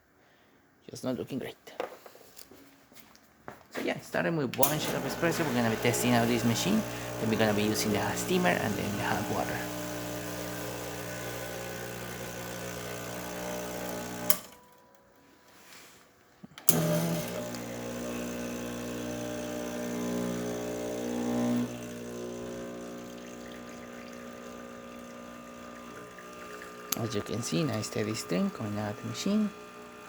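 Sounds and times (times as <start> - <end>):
pump switch click: 4.6 - 9.5, 16.6 - 17.7
espresso machine pump humming: 4.6 - 14.5, 16.7 - 30.0.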